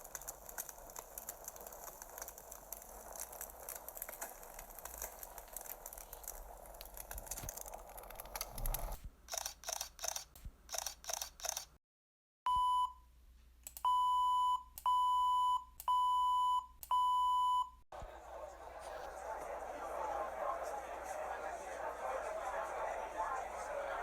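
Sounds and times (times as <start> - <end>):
mechanical clicking and crackling: 0.0 - 11.8.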